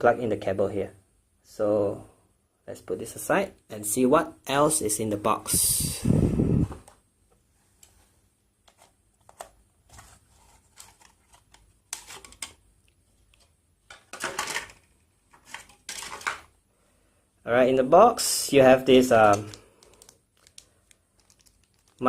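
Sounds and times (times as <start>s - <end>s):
box packaging rustling: 8.7s - 12.6s, 13.2s - 16.5s, 19.2s - 22.0s.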